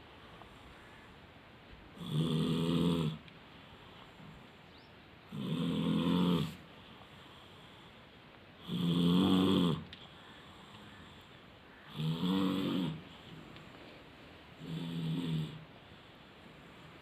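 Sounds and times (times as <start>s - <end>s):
child snoring loudly: 2.0s - 3.2s, 5.3s - 6.6s, 8.6s - 9.9s, 11.9s - 13.0s, 14.6s - 15.6s.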